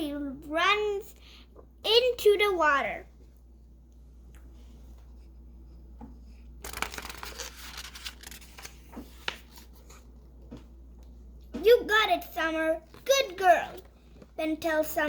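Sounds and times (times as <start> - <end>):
paper page rustling: 6.6 - 10.1.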